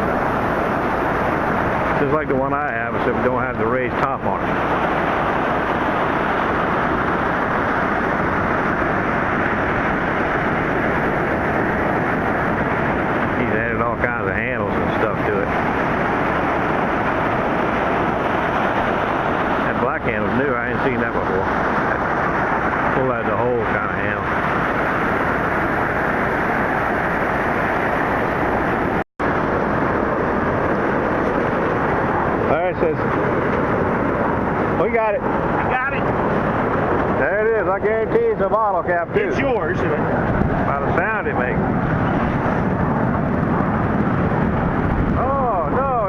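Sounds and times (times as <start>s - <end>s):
heavy surf: 0.0s - 46.0s
wind on microphone: 0.0s - 46.0s.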